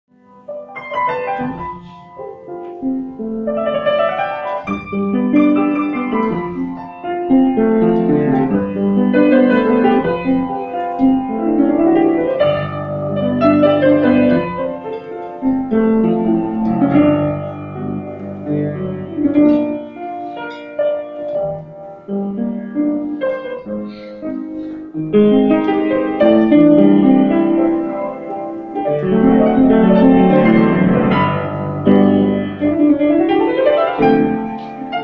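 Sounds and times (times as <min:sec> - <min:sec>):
piano jazz ballad: 0:00.1 - 0:35.0.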